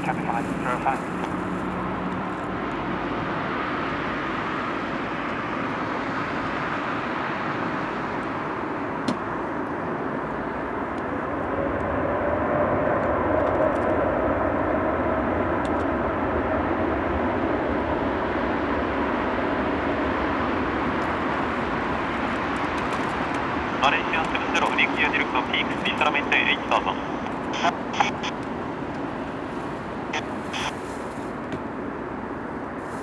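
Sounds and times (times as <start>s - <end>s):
jet engines rumbling hiss: 0.0s - 5.7s, 6.4s - 33.0s
faint engine whine: 0.0s - 33.0s.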